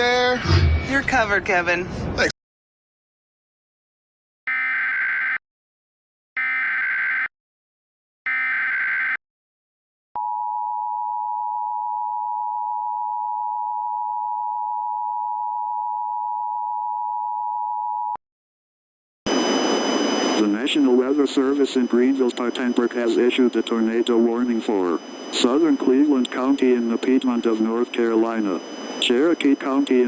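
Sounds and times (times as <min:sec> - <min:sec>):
broadcast voice message: 0:00.0 - 0:02.3, 0:20.2 - 0:30.0
two-tone alarm: 0:04.5 - 0:05.4, 0:06.4 - 0:07.3, 0:08.3 - 0:09.2, 0:19.3 - 0:30.0
raspy digital data bursts: 0:21.0 - 0:30.0.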